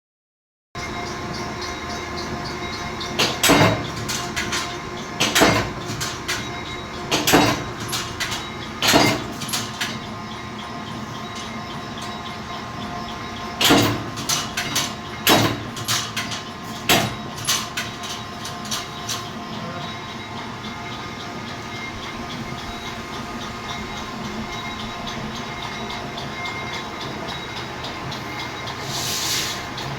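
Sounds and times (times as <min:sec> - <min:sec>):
milling machine running: 0:00.8 - 0:29.9
metallic knocks and clanks: 0:02.7 - 0:10.1, 0:13.5 - 0:19.4.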